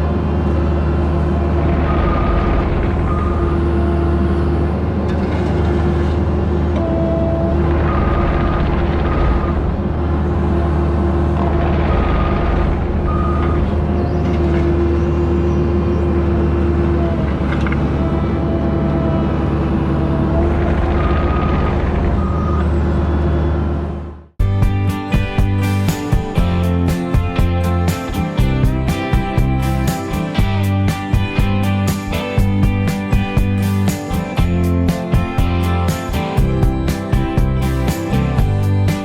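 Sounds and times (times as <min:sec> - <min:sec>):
diesel engine running under load: 0:00.0 - 0:39.0
backup alarm beeps: 0:01.9 - 0:03.7, 0:13.1 - 0:13.6, 0:22.2 - 0:22.8.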